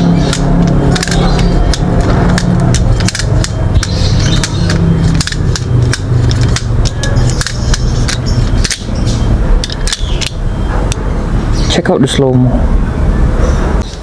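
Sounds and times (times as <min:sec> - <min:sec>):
steady low drone: 0:00.0 - 0:14.0
butterfly knife handles clacking: 0:00.2 - 0:11.0.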